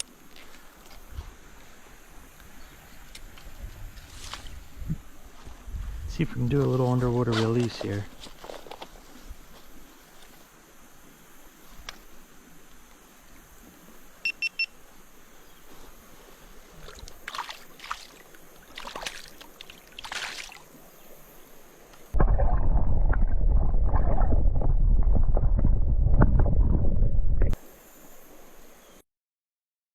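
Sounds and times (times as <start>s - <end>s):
short electronic beeps: 14.2s - 14.7s
light water splashes: 16.0s - 22.2s
muffled underwater rushing: 22.1s - 27.6s.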